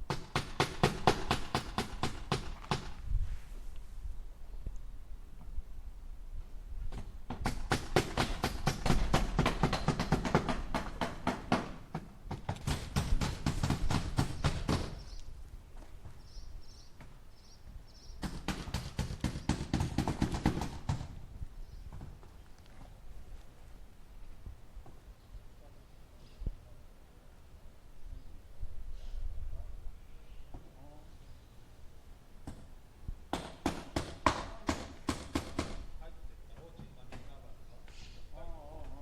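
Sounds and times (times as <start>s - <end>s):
hammer striking nail into wood: 0.1s - 2.9s, 7.3s - 15.0s, 33.3s - 35.9s.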